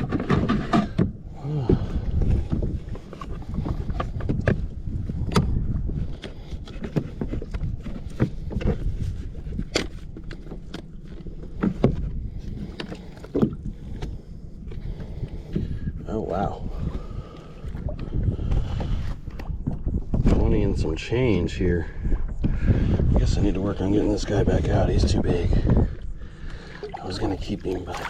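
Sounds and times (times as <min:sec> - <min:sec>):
wind rumbling on microphone: 0:00.0 - 0:28.0.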